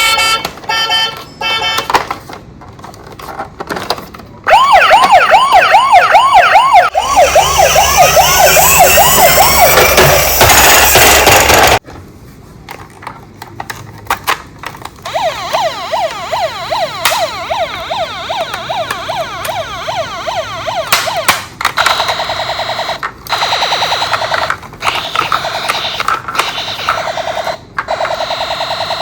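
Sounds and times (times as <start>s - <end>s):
yelp siren: 4.5s - 11.2s, 15.1s - 24.3s
toy siren wailing: 4.5s - 11.8s, 15.1s - 29.0s
buzzing alarm tone: 4.6s - 11.8s, 15.1s - 24.3s.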